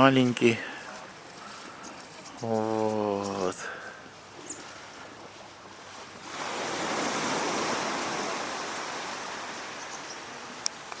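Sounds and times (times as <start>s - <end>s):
sea wave washing up beach: 6.0s - 11.0s.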